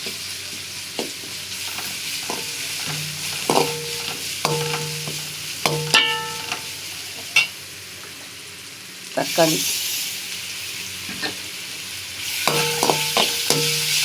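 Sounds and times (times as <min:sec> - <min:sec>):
onions sizzling in hot oil: 0:00.0 - 0:14.0
spatula scraping pan: 0:01.7 - 0:06.8, 0:12.4 - 0:14.0.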